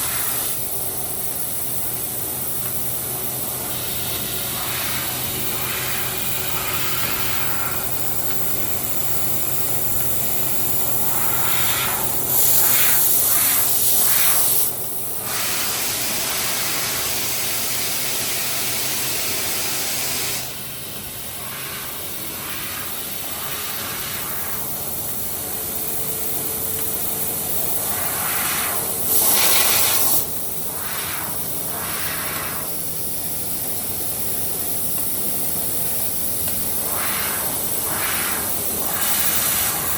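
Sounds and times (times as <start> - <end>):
hiss of assist gas: 27.8 - 32.8.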